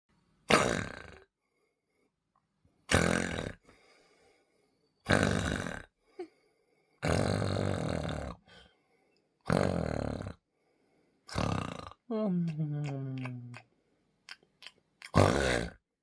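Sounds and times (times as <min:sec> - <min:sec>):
loud snores: 0:00.5 - 0:01.3, 0:02.9 - 0:04.3, 0:05.0 - 0:06.0, 0:07.0 - 0:08.7, 0:09.4 - 0:10.5, 0:11.3 - 0:12.0, 0:15.1 - 0:15.8.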